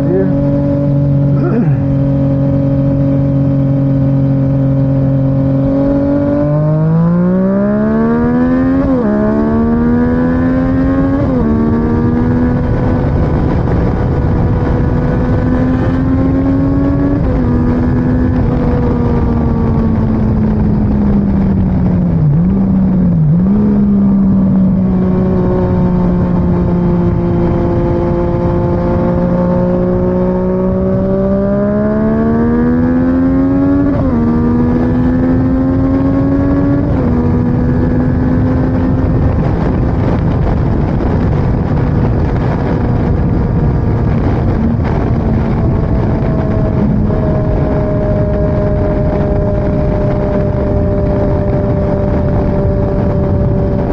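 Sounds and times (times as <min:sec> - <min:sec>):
motorcycle engine: 0:00.0 - 0:53.9
wind rush: 0:00.0 - 0:53.9.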